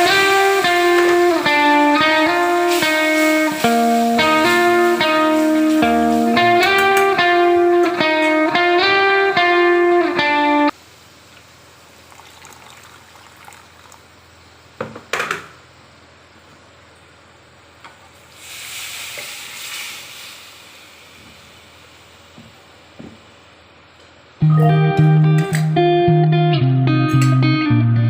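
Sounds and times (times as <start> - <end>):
electric guitar music: 0.0 - 10.8, 24.4 - 28.0.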